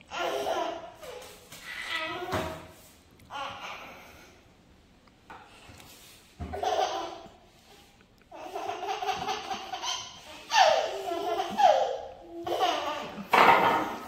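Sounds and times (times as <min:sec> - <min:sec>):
baby laughing: 0:06.5 - 0:07.4, 0:08.3 - 0:13.7.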